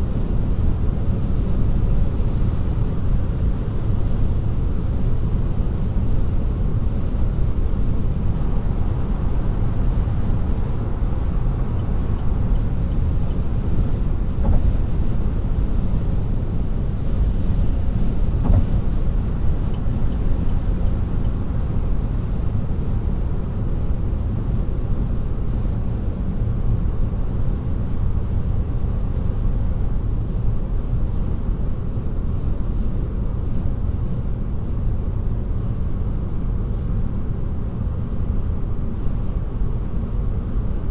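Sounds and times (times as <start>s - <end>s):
tyre and road noise: 8.1s - 22.8s.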